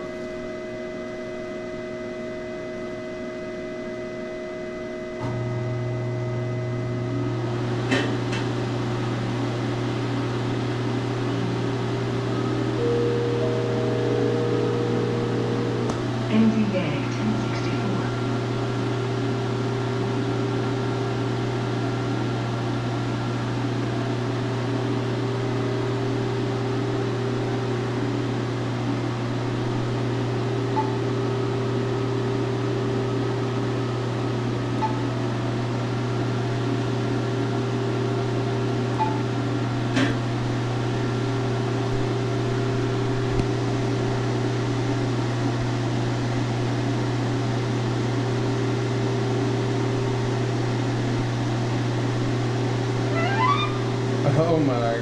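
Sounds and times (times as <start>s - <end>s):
machine cooling fans humming: 0.0s - 55.0s
faint high whine: 12.2s - 18.3s.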